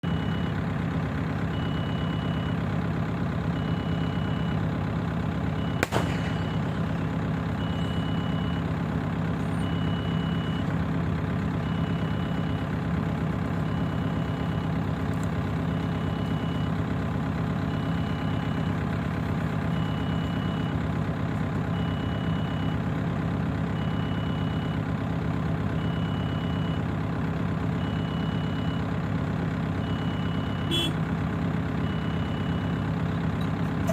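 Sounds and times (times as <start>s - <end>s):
reversing alarm beeping: 0.0s - 0.6s, 1.5s - 2.6s, 3.6s - 4.6s, 5.6s - 7.0s, 7.6s - 8.7s, 9.5s - 10.7s, 11.6s - 12.7s, 13.6s - 14.8s, 15.6s - 16.8s, 17.6s - 18.8s, 19.7s - 20.8s, 21.7s - 22.8s, 23.8s - 24.8s, 25.8s - 26.8s, 27.8s - 28.9s, 29.8s - 31.0s, 31.8s - 33.9s
diesel engine running: 0.0s - 33.9s.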